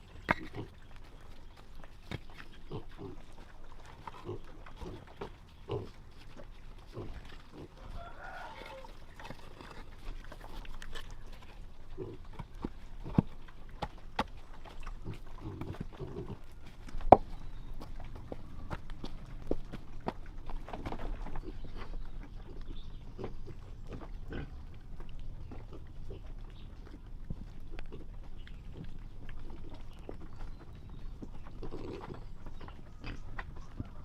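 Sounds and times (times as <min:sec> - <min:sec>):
pig grunting: 0:00.0 - 0:00.9, 0:02.4 - 0:13.7, 0:14.7 - 0:16.6, 0:21.4 - 0:30.2, 0:31.2 - 0:34.0.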